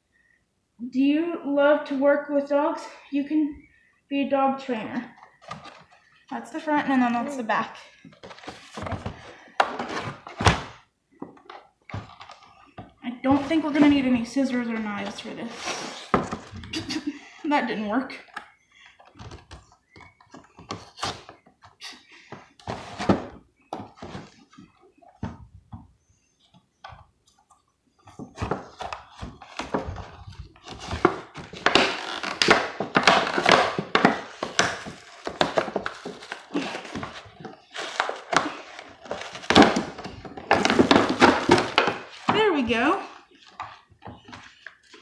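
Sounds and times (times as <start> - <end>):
packaging tearing and handling: 30.6 - 42.3.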